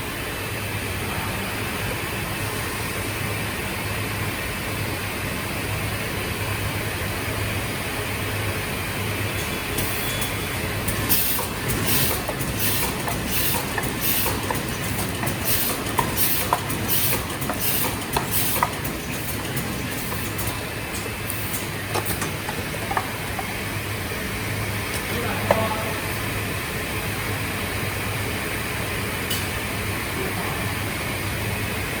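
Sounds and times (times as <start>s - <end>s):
rhythmic machine clacks and hisses: 9.3s - 23.9s
machine humming: 9.4s - 27.6s.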